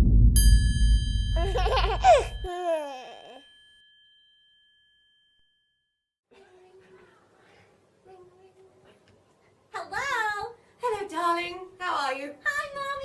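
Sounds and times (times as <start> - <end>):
bright bell ding: 0.4 - 5.8.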